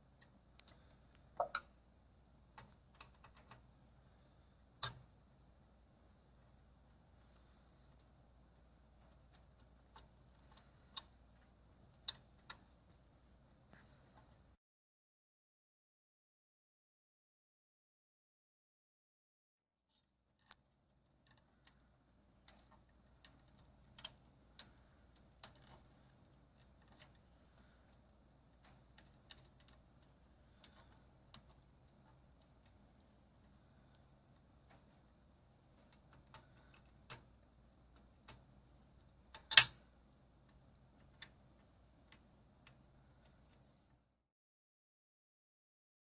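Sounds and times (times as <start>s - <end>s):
faint low hum: 0.0s - 14.6s, 19.9s - 44.3s.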